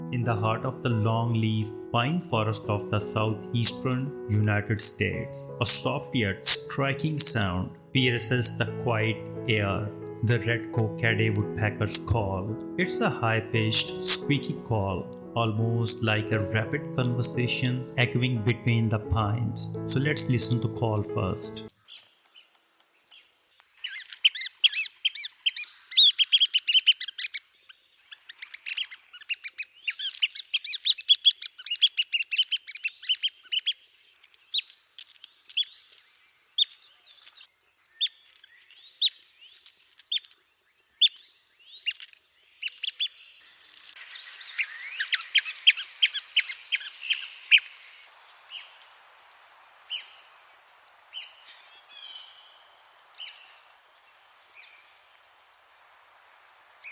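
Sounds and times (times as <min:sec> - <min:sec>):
woodpecker chattering calls: 0:23.8 - 0:27.5, 0:28.1 - 0:33.9, 0:40.1 - 0:43.3.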